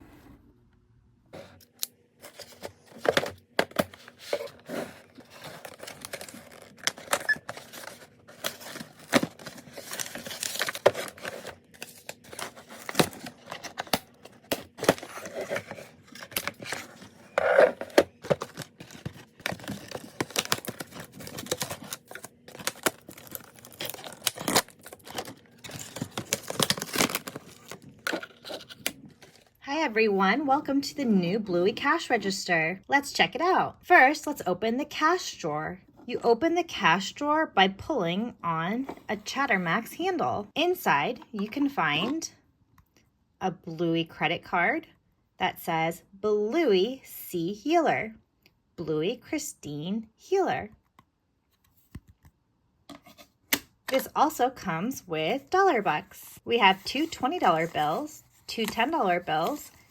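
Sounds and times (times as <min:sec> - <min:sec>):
packaging tearing and crinkling: 0:04.2 - 0:29.4.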